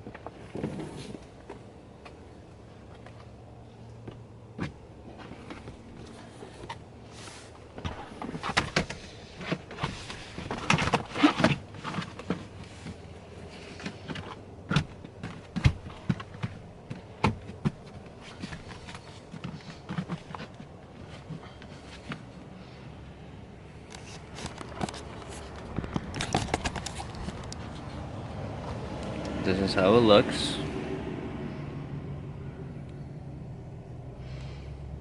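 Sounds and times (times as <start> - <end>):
rubber floor mat rustling and scraping: 0.0 - 2.2, 4.0 - 29.2.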